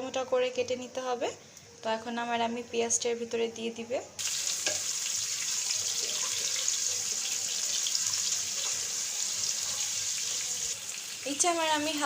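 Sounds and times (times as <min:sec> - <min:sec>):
onions sizzling in hot oil: 0:04.2 - 0:12.0.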